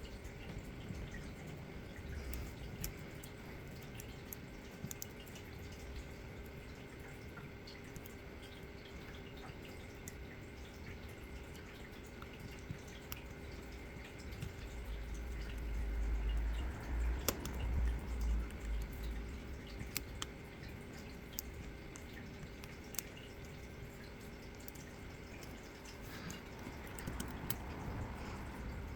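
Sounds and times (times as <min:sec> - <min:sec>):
low handling rumble: 0:14.5 - 0:19.8, 0:26.4 - 0:28.9.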